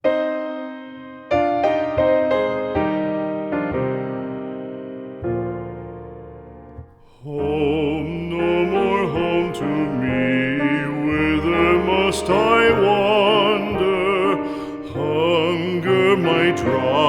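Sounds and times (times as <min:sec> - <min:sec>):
person singing with vibrato: 0:07.0 - 0:17.0.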